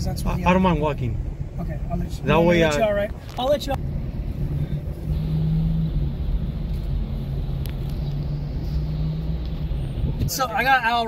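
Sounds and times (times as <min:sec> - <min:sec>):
constant low hum: 0:00.0 - 0:10.4
car engine rumble from inside: 0:00.0 - 0:11.0.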